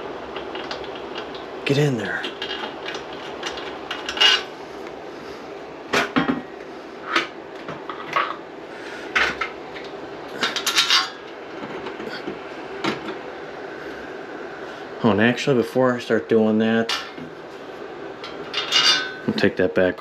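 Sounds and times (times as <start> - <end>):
tools and parts clinking: 2.2 - 4.5, 9.1 - 12.2, 18.2 - 19.5.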